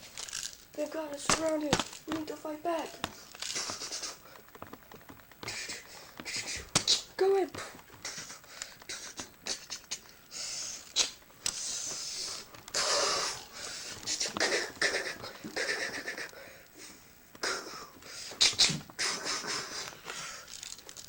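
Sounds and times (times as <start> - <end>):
person hissing and huffing: 5.4 - 20.6.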